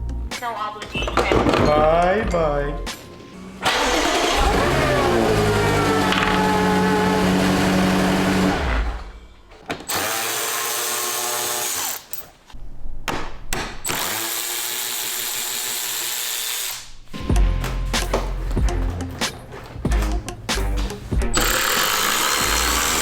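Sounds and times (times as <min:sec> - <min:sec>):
cordless drill motor spinning: 0:21.4 - 0:23.0.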